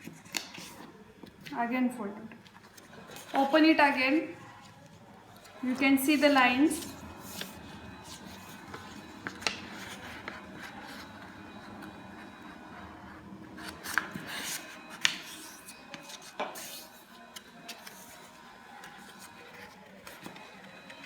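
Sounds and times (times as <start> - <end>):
paper rustling and creasing: 4.5 - 21.0.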